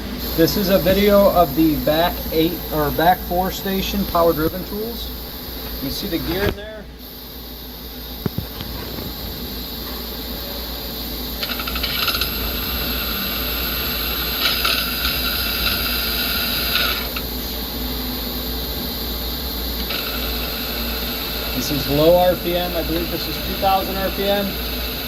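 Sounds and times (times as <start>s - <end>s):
lathe machine hum: 0.0s - 25.0s
metallic gear rattle and whine: 11.1s - 17.4s.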